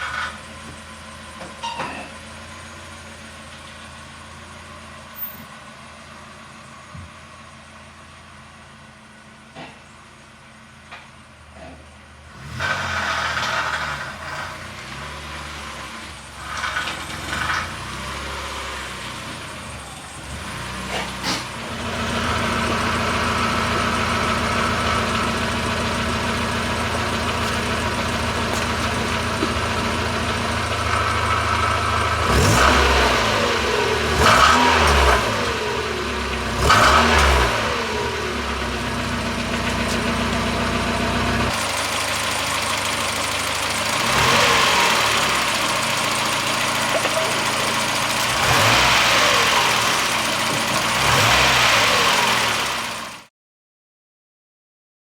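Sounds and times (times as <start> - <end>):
car engine idling and revving: 0.0 - 53.3.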